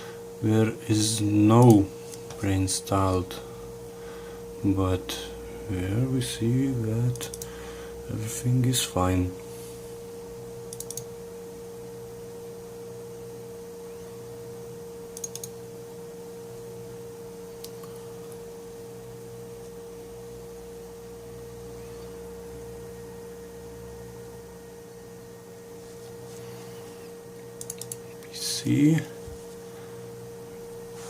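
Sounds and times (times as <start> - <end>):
electrical hum: 0.0 - 31.0
computer mouse clicks: 7.1 - 7.5, 10.7 - 11.1, 15.1 - 15.6, 27.6 - 28.3.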